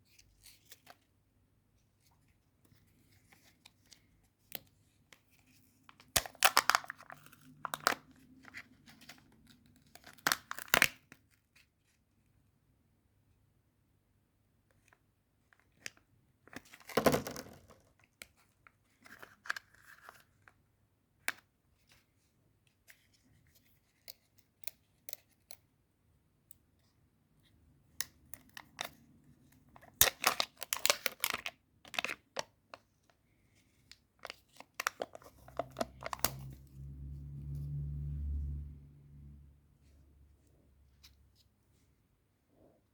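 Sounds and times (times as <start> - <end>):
low hum: 36.0 - 40.3.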